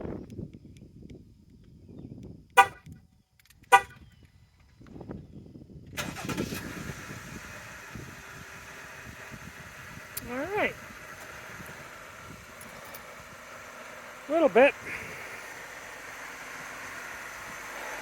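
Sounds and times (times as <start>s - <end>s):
car horn chirps: 2.6s - 2.9s, 3.7s - 4.0s
car engine starting and running: 5.8s - 18.0s.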